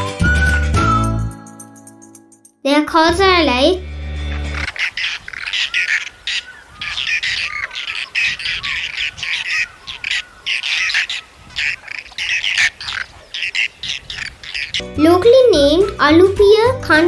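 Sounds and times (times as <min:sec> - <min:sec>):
terns calling harshly: 0:04.3 - 0:16.8.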